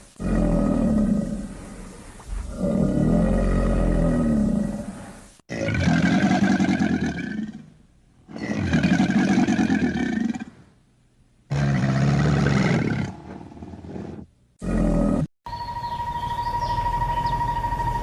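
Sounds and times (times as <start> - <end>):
large animal roaring: 2.4 - 7.6, 11.5 - 15.3
faint bird chirps: 15.5 - 18.0
steady high tone: 15.5 - 18.0.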